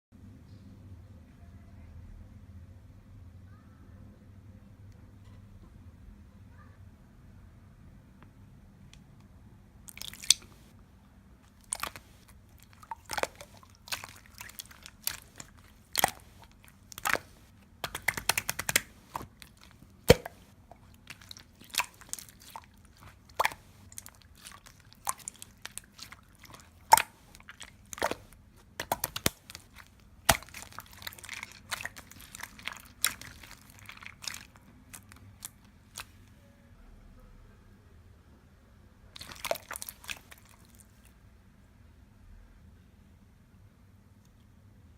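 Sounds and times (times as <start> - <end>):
crisp crunching and chewing: 9.9 - 10.7, 11.5 - 36.2, 39.2 - 40.9.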